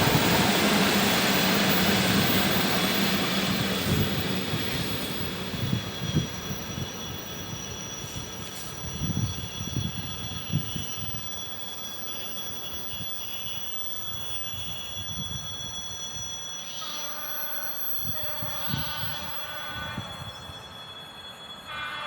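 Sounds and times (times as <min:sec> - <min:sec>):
train rumble: 0:00.0 - 0:16.4
faint ringing tones: 0:03.5 - 0:22.0.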